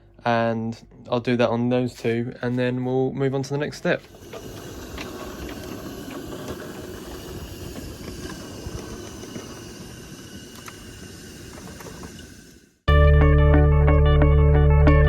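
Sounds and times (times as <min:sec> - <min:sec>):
steady hiss: 0:03.8 - 0:12.9.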